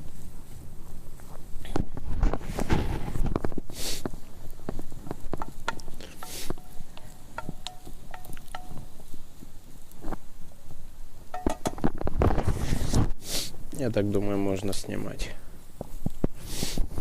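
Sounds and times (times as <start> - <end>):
short rustling hisses: 2.4 - 4.3, 6.0 - 6.7, 12.4 - 13.7, 16.2 - 17.0
small clicks and knocks: 4.6 - 8.9, 11.3 - 12.1.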